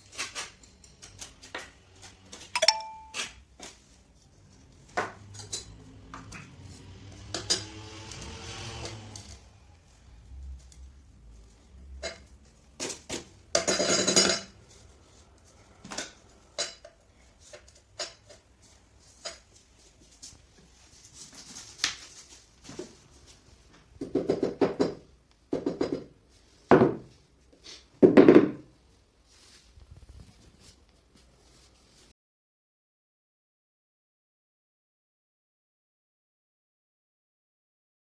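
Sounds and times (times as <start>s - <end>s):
hard objects clinking and knocking: 2.6s - 3.3s, 12.0s - 14.5s.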